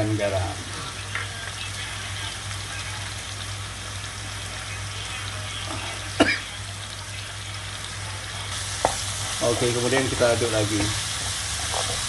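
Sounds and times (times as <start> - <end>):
paste sizzling in a pan: 0.0 - 12.0.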